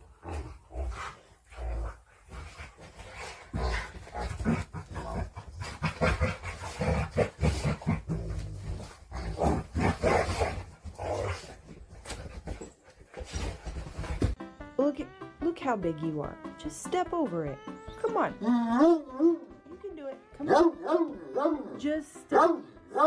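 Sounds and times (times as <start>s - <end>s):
dog vocalizing: 0.0s - 11.9s.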